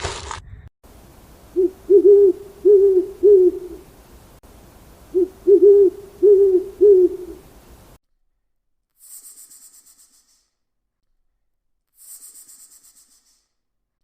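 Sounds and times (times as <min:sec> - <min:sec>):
bird hooting: 0:01.5 - 0:03.9, 0:05.0 - 0:07.6.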